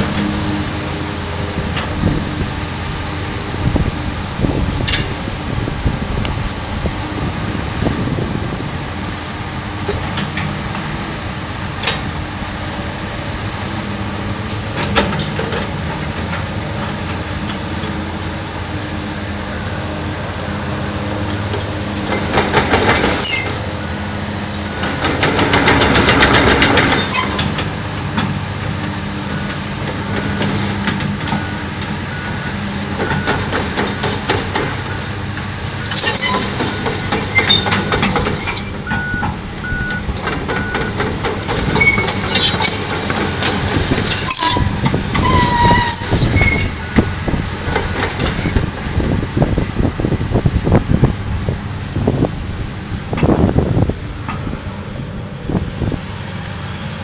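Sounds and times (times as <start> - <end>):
excavator diesel engine humming: 0.0 - 57.0
metal clanks: 4.8 - 5.3
short high-pitched squeals: 23.2 - 23.8, 26.9 - 27.5, 44.1 - 47.1.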